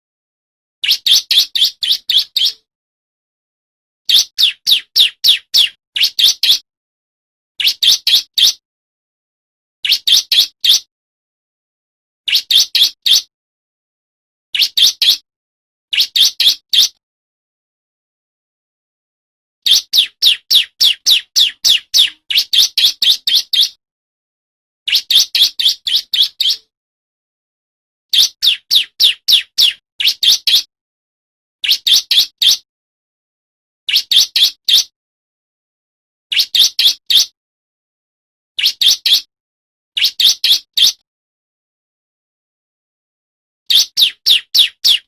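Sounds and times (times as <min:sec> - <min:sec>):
bird singing sharp high notes: 0:19.7 - 0:23.8.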